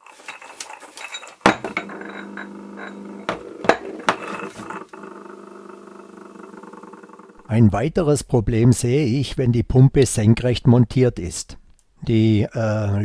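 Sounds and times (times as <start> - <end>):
sharp clicks and clinks: 0.3 - 4.6
circulation pump humming: 1.5 - 7.5.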